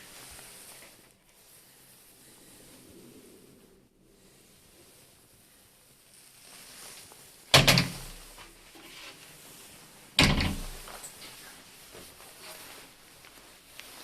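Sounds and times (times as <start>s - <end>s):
door banging shut with rattle: 7.5s - 8.2s, 10.2s - 10.9s.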